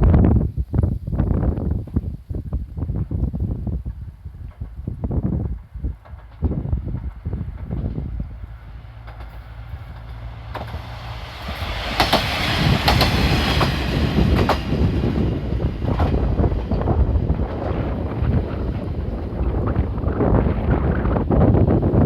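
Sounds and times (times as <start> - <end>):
diesel train passing: 4.2 - 22.0
wheels clacking over rail joints: 4.4 - 20.0.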